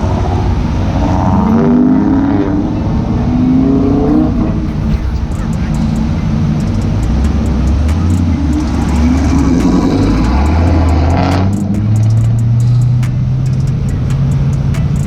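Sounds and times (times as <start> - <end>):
car engine accelerating: 0.6 - 15.0.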